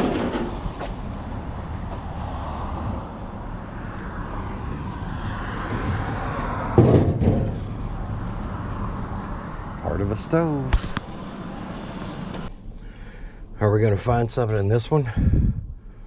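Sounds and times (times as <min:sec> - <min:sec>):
loud clunk: 0:00.0 - 0:01.0, 0:06.7 - 0:07.8
vehicle running noise: 0:00.0 - 0:14.7
small knocks: 0:06.7 - 0:07.6.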